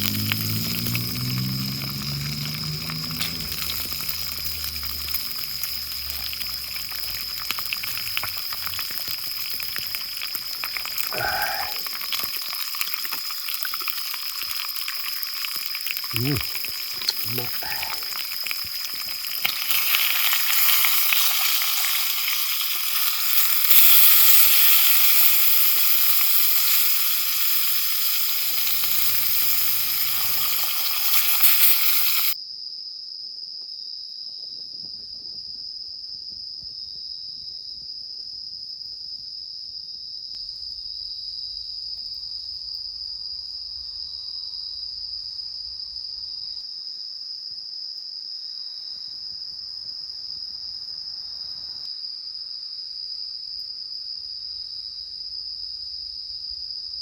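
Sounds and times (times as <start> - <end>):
food sizzling in a pan: 0.0 - 32.4
insects trilling: 0.0 - 32.4.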